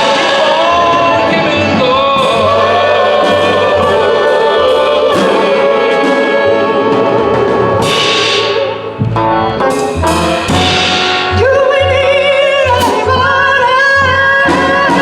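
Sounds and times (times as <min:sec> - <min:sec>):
stepping bass line: 0:07.9 - 0:14.4
wavering melody line: 0:08.7 - 0:12.6.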